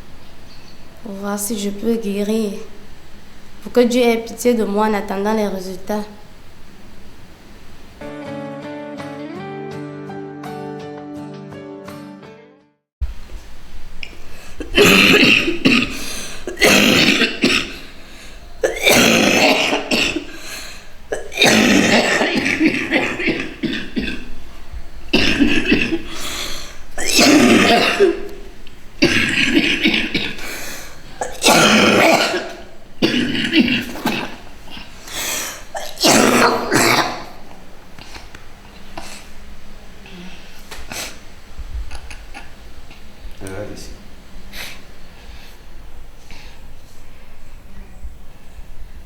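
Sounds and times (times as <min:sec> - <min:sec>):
young woman coughing: 0:14.5 - 0:18.0, 0:18.6 - 0:24.4, 0:25.1 - 0:35.0, 0:35.6 - 0:37.4.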